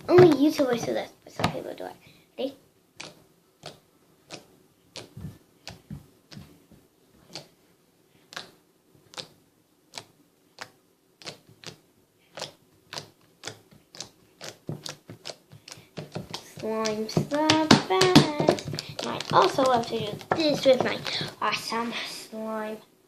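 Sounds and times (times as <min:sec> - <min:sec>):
slime sticky pops: 0:03.0 - 0:06.5, 0:08.3 - 0:21.4.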